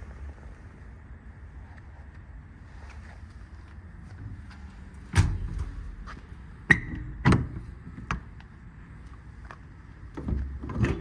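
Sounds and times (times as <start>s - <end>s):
metal compartment doors clunking: 5.0s - 7.7s.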